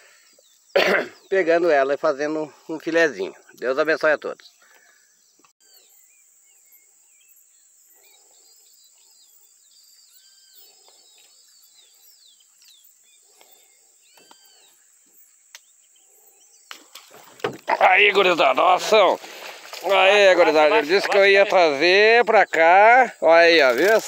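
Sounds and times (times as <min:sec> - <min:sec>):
birds chirping and calling: 0:00.0 - 0:24.0
insect buzz: 0:02.8 - 0:24.0.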